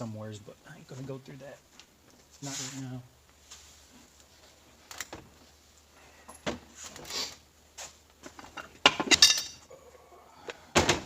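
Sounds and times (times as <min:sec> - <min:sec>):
metal parts clinking and knocking: 0:08.4 - 0:09.6.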